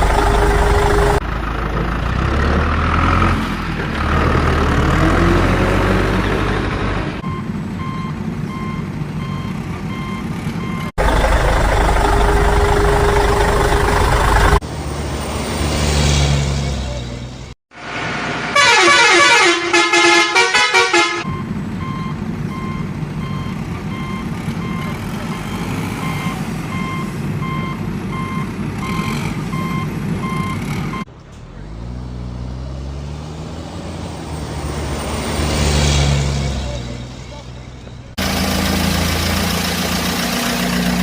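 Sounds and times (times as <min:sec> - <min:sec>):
engine revving: 0:00.0 - 0:07.4, 0:10.6 - 0:17.2, 0:20.4 - 0:41.0
reversing alarm beeps: 0:07.2 - 0:10.9, 0:21.3 - 0:31.1
pulsing horn toot: 0:18.5 - 0:21.4.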